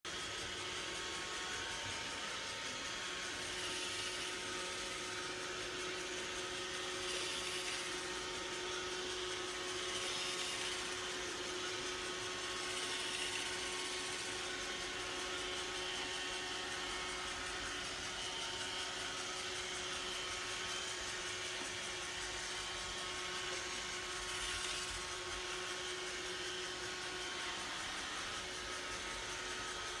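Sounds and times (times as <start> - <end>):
robot vacuum motor whine: 0.1 - 30.0.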